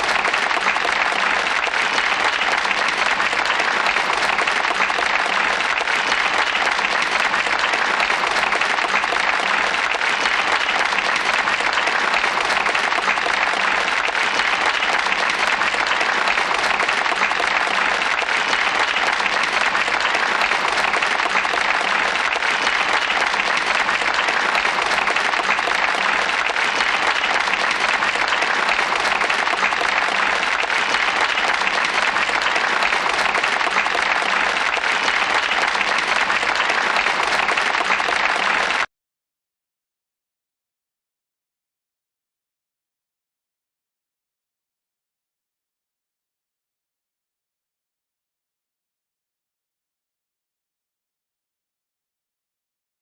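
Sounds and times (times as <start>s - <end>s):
crowd applauding: 0.0s - 38.9s.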